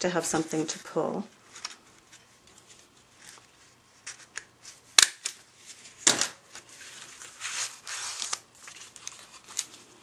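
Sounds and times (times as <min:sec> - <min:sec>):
hand stapler snapping: 0:05.0 - 0:05.4
cardstock rustling: 0:06.5 - 0:09.9.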